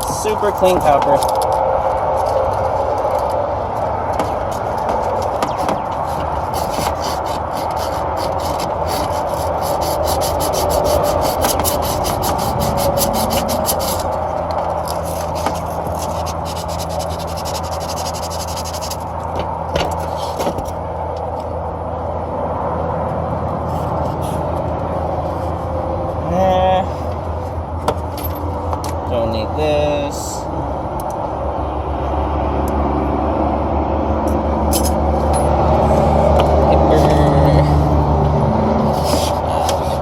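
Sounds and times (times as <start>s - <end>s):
rubbing copper tubing: 0.0s - 20.8s, 38.7s - 40.0s.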